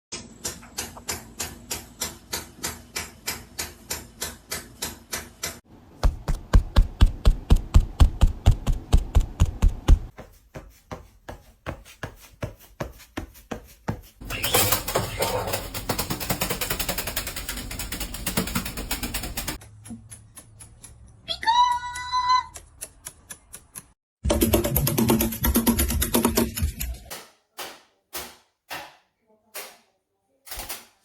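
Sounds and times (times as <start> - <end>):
rapid tapping: 14.7 - 21.2.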